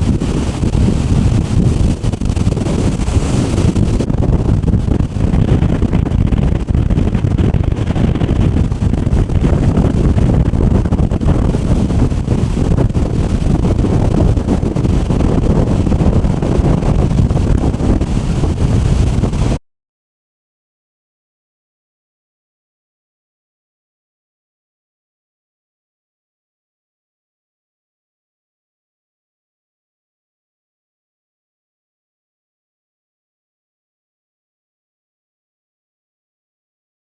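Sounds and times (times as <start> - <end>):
surf breaking on rocks: 0.0 - 19.6
wind buffeting microphone: 0.0 - 19.6.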